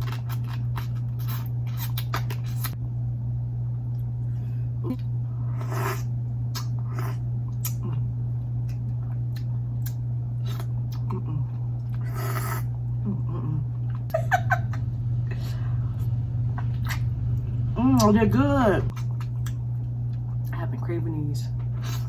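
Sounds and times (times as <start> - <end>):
crab shell cracking and chewing: 0.0 - 2.8
steady low hum: 0.0 - 22.0.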